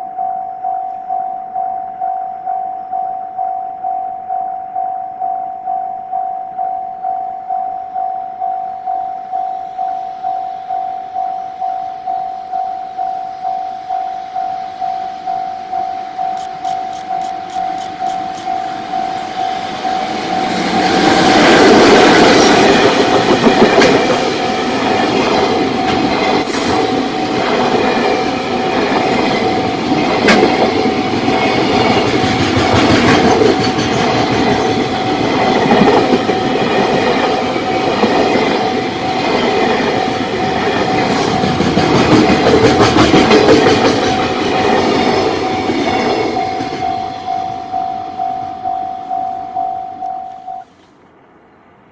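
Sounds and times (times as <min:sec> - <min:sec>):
level-crossing alarm ringing: 0:00.0 - 0:50.8
train wheels rushing on rail: 0:13.0 - 0:50.0
clickety-clack over rail joints: 0:19.6 - 0:47.0.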